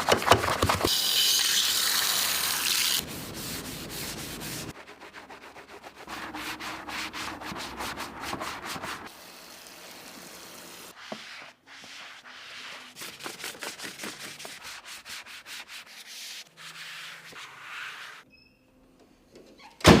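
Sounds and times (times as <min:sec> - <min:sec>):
scrubbing strokes on surface: 0:02.6 - 0:09.1, 0:10.9 - 0:18.2.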